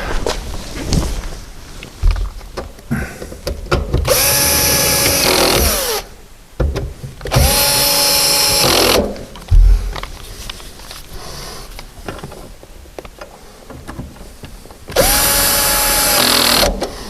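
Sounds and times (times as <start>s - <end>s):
cordless screwdriver driving screws: 4.1s - 6.0s, 15.0s - 16.8s.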